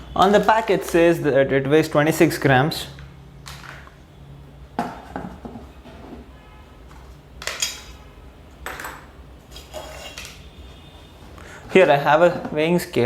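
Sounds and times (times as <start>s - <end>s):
dishes clinking and knocking: 4.8s - 6.3s, 8.6s - 10.4s.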